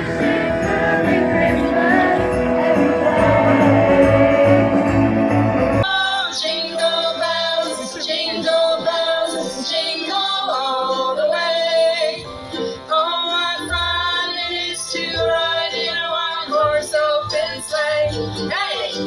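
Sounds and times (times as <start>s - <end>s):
woman singing: 0.0s - 5.1s, 5.8s - 12.2s
musical accompaniment: 0.0s - 19.0s.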